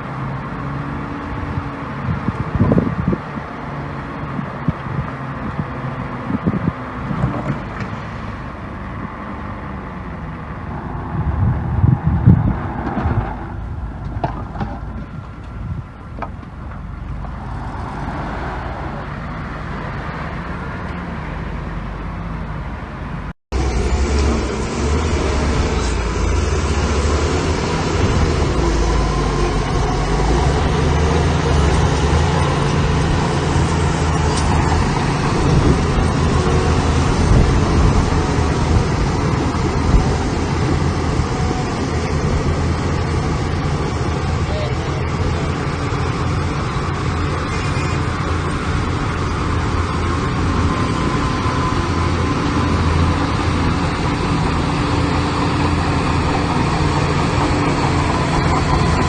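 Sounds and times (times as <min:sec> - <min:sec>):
diesel engine running: 0:18.8 - 0:59.0.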